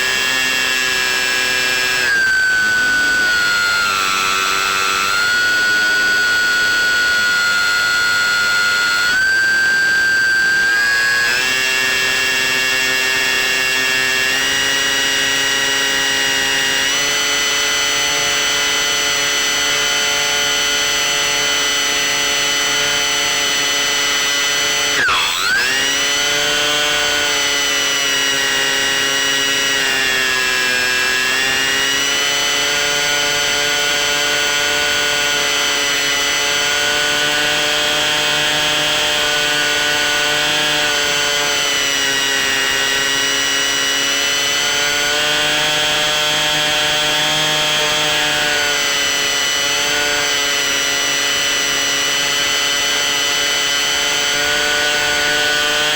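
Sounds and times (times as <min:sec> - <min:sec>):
model airplane motor whine: 0:00.0 - 0:55.9.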